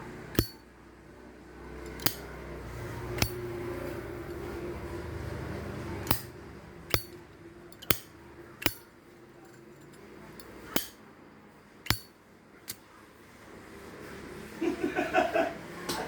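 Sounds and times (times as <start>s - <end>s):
lighter lid clicking: 1.9s - 2.2s.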